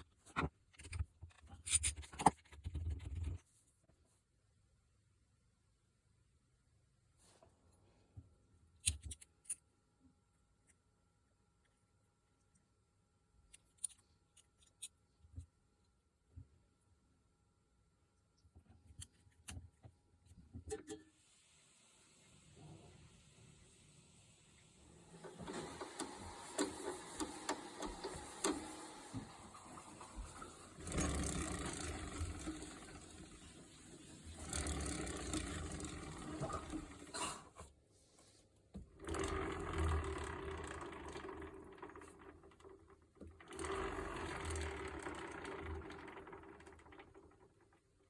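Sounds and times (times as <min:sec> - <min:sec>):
wheel whirring and ticking: 0:30.8 - 0:33.3, 0:34.3 - 0:36.8, 0:39.0 - 0:47.8.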